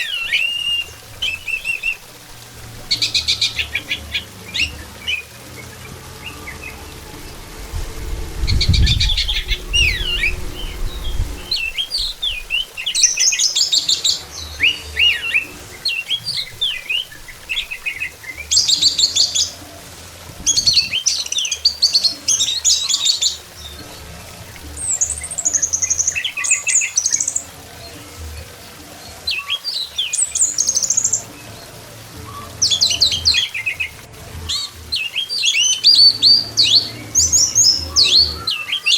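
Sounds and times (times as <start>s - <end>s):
thrush singing: 0.0s - 38.9s
low rumble: 6.1s - 12.6s.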